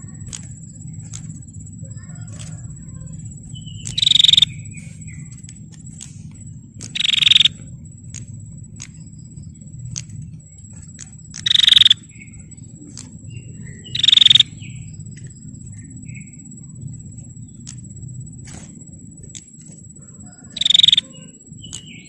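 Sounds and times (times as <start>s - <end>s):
bird rattling call: 0.0s - 9.0s, 10.0s - 14.9s, 20.0s - 22.0s
faint ticks: 0.0s - 22.0s
thin steady high tone: 0.0s - 22.0s.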